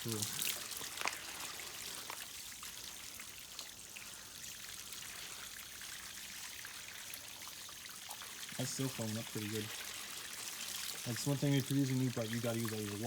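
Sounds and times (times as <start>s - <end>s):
small water drips: 0.0s - 13.0s
water trickling: 0.0s - 13.0s.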